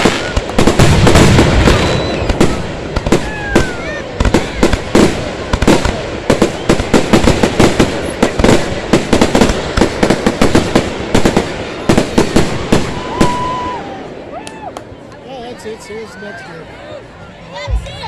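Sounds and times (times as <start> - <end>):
fireworks bangs and crackling: 0.0 - 14.3.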